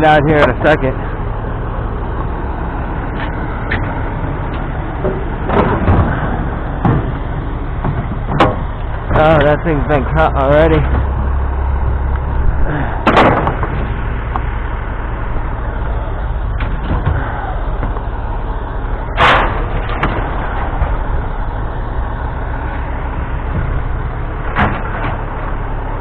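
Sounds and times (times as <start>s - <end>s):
vehicle engine rumbling: 0.0s - 26.0s
sharp knocks: 5.0s - 7.2s, 7.8s - 9.5s, 13.0s - 14.0s.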